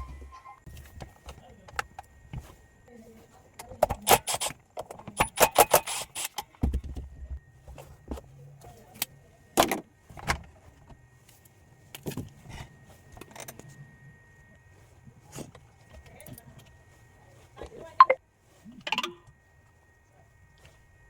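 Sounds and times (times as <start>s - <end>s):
tools and small parts clicking: 3.6s - 6.6s, 18.8s - 19.3s.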